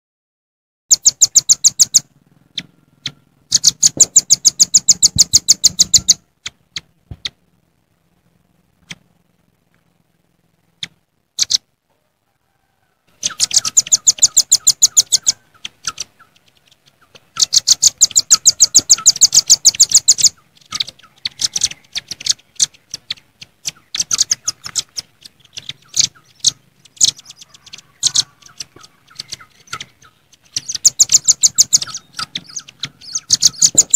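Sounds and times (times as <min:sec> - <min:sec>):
birds trilling sharp high notes: 0:00.9 - 0:06.2, 0:13.2 - 0:16.4, 0:17.0 - 0:25.0, 0:25.7 - 0:33.9.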